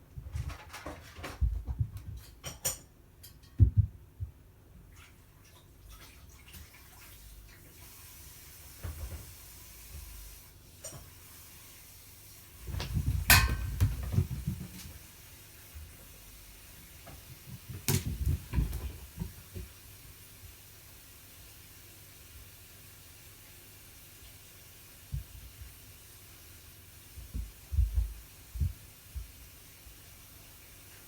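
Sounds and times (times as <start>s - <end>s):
cats thumping and scuffling: 0.1s - 2.7s, 3.6s - 4.4s, 12.6s - 15.2s, 17.0s - 19.8s, 27.2s - 29.4s.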